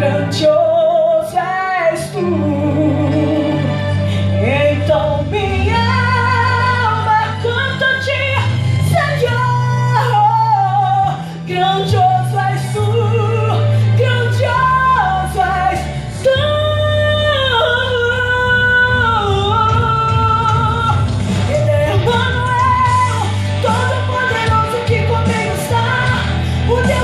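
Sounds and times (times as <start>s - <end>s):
full band backing: 0.0s - 27.0s
woman singing worship song: 0.0s - 27.0s.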